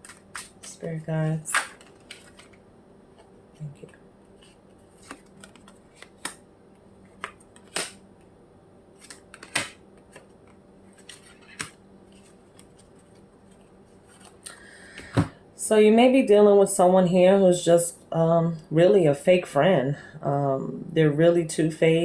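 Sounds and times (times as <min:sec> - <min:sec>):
cards clicking and snapping: 0:00.0 - 0:00.8, 0:01.5 - 0:02.6, 0:04.4 - 0:06.4, 0:07.1 - 0:08.0, 0:09.0 - 0:13.2.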